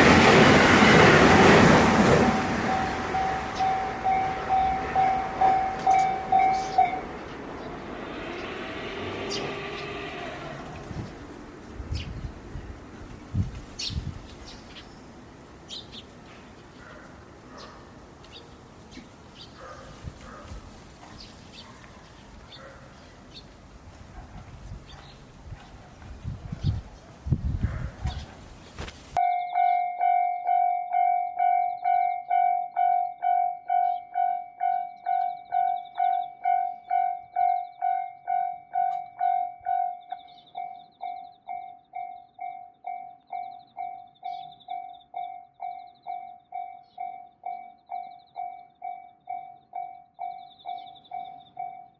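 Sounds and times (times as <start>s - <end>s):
level crossing alarm ringing: 0.0s - 13.3s
faint outdoor background: 0.0s - 51.9s
small birds chirping: 3.0s - 29.2s.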